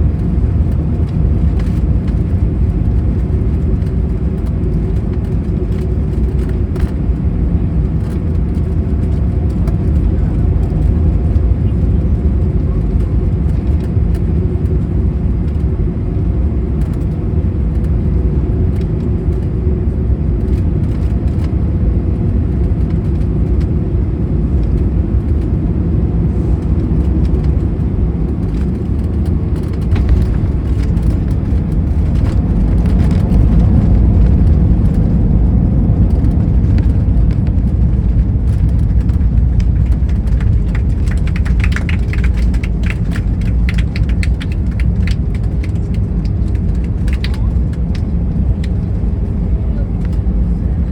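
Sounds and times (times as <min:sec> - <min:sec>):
aircraft engine and airflow rumble: 0:00.0 - 0:50.9
small rattles: 0:36.0 - 0:48.1.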